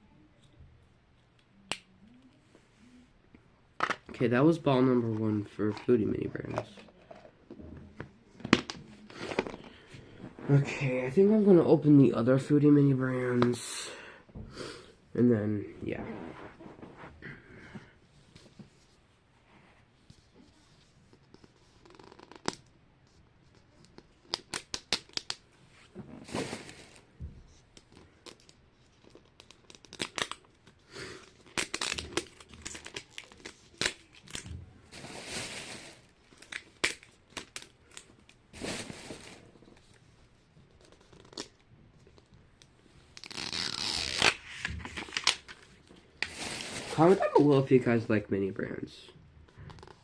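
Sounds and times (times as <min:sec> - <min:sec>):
plastic packaging tearing and crinkling: 0:28.2 - 0:30.6, 0:31.4 - 0:39.4, 0:43.1 - 0:47.6.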